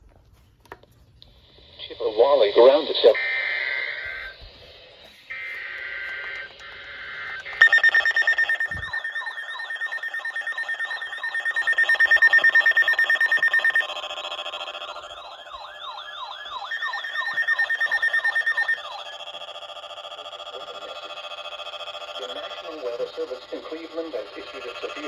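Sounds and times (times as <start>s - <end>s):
rapidly pulsing electronic beep: 2.2s - 25.0s
warbling sweeping alarm tones: 2.3s - 25.0s
screechy digital data tones: 5.3s - 25.0s.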